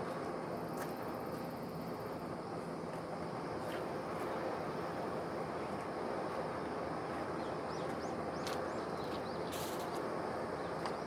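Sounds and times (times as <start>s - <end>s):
outdoor background rush: 0.0s - 11.0s.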